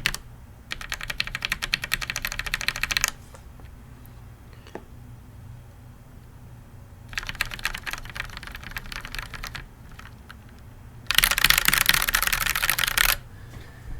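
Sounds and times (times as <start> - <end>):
mechanical keyboard keystrokes: 0.0 - 3.2, 7.1 - 10.5, 11.1 - 13.2.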